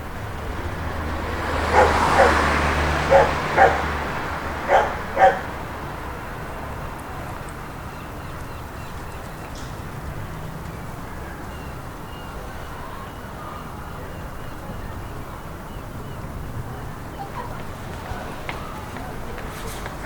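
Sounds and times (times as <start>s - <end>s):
vehicle passing by: 0.0s - 20.0s
dog barking: 1.6s - 5.7s.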